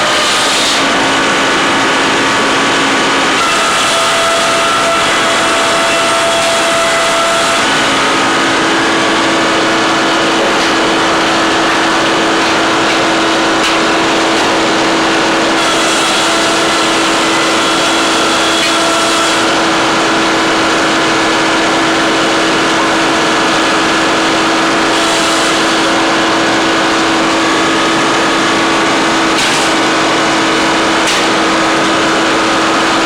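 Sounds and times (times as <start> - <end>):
heavy machine engine humming: 0.0 - 33.0.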